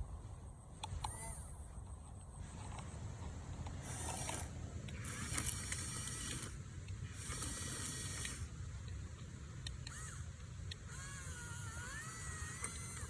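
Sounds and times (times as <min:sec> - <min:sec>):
small electric motors whirring: 0:00.8 - 0:01.8, 0:03.7 - 0:08.6, 0:09.6 - 0:13.0.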